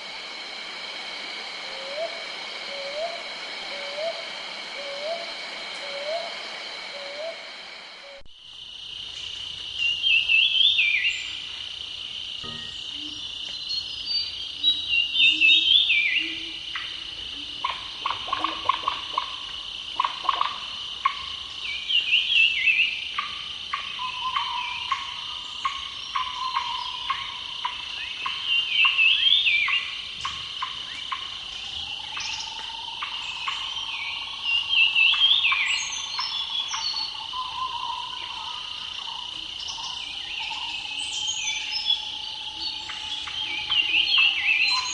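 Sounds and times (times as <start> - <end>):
insects chirring: 0.0 - 44.9
warbling call: 1.6 - 8.2.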